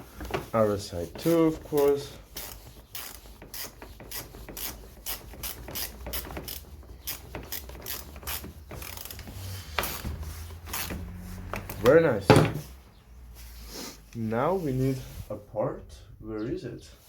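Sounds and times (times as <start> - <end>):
hand ratchet clicking: 1.2 - 11.8.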